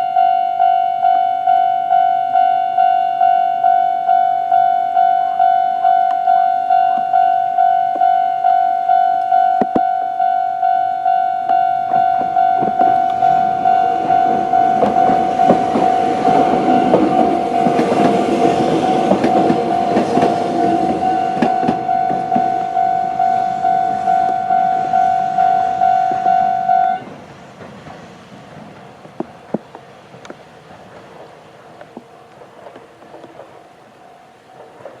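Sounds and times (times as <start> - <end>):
level crossing alarm ringing: 0.0 - 27.1
train wheels clattering over rail joints: 11.8 - 26.4, 27.0 - 33.6.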